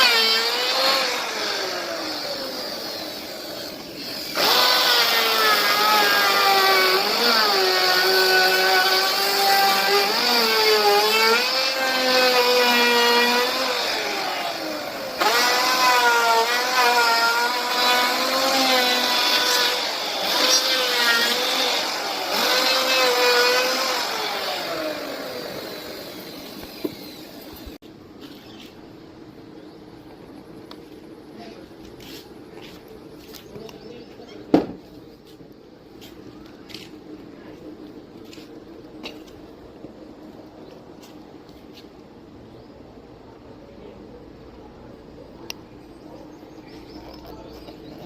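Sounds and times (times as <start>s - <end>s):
power tool motor cutting wood: 0.0s - 27.8s.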